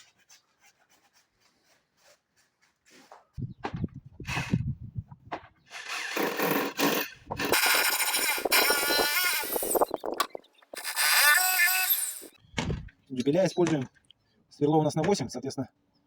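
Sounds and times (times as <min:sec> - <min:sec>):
electric drill drilling into wall: 0:05.7 - 0:12.4.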